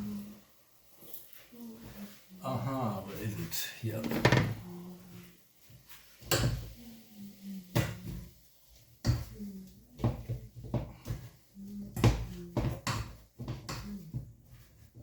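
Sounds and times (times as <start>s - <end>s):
utensils and cupboards knocking: 4.0s - 4.6s.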